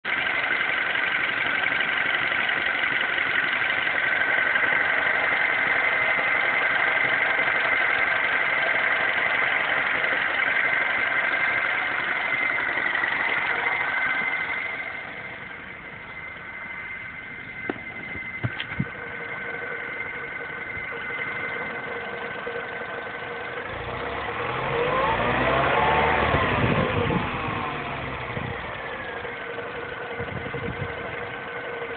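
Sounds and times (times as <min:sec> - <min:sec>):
car engine idling: 0:00.0 - 0:31.9
high-pitched whine: 0:10.8 - 0:31.9.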